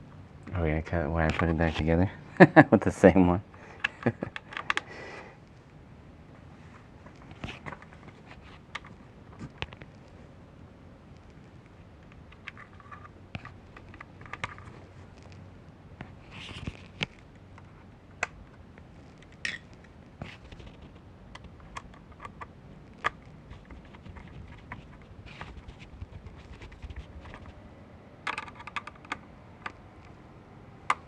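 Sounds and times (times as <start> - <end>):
screwdriver and plastic parts clicking: 3.8 - 4.9, 12.1 - 14.7, 28.3 - 30.2.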